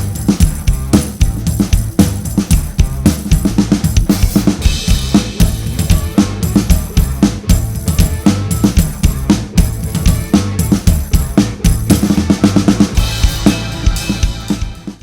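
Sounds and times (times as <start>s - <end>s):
backing song with bass line: 0.0s - 15.0s
drum kit playing a groove: 0.0s - 15.0s.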